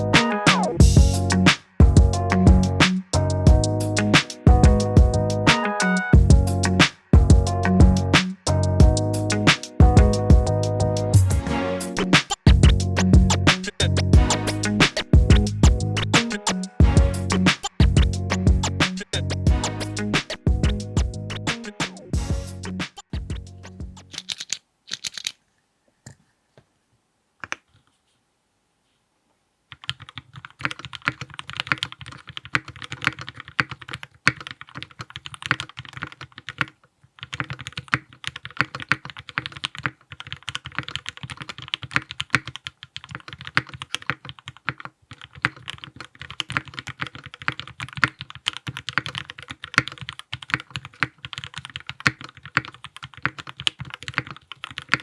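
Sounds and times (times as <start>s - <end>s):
typing on mechanical keyboard: 23.9s - 25.4s, 29.7s - 55.0s.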